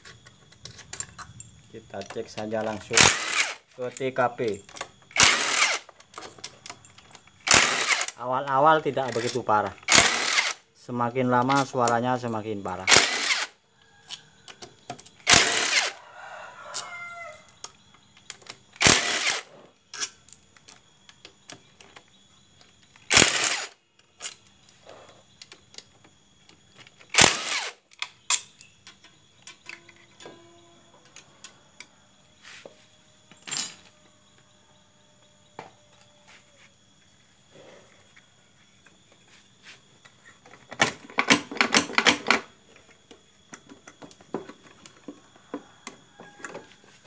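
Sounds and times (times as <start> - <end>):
bolts and tools clinking: 0.0 - 15.9
power tool bursts: 2.6 - 3.8, 5.1 - 5.9, 7.4 - 8.2, 9.1 - 10.6, 12.8 - 13.6, 15.2 - 16.0, 18.8 - 19.6, 23.0 - 23.8, 27.1 - 27.9
rooster crowing: 13.1 - 17.7, 45.2 - 47.0.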